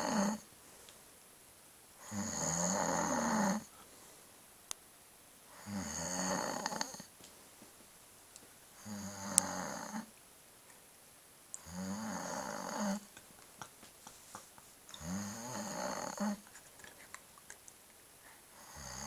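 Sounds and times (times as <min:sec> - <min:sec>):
rattling snores: 0:00.0 - 0:00.4, 0:02.0 - 0:03.7, 0:05.6 - 0:07.1, 0:08.8 - 0:10.1, 0:11.6 - 0:13.1, 0:14.9 - 0:16.4, 0:18.6 - 0:19.0.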